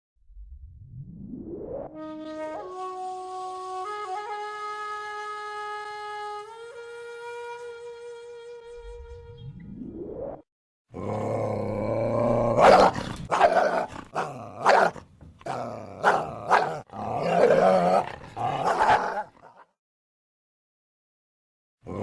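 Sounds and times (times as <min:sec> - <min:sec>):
coyote barking: 0:12.6 - 0:19.6.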